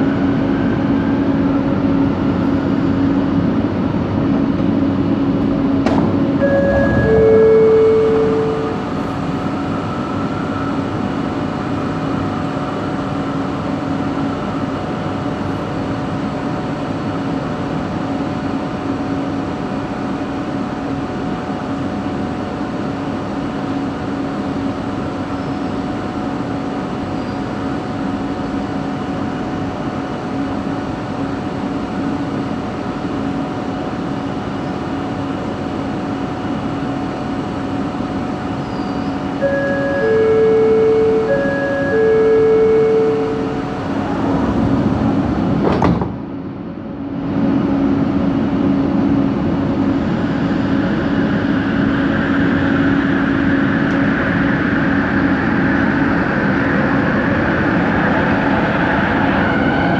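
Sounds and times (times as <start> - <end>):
train running noise inside coach: 0.0 - 59.9
traction motor droning: 6.4 - 9.4, 39.4 - 45.8.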